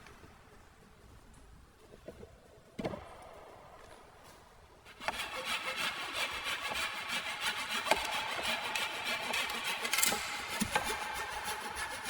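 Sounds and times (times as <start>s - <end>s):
hand saw cutting wood: 4.9s - 12.0s.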